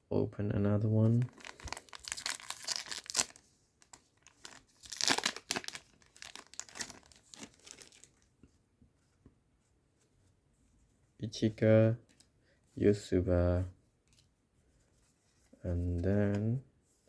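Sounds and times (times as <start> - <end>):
foil wrapper tearing and crinkling: 1.2 - 8.2.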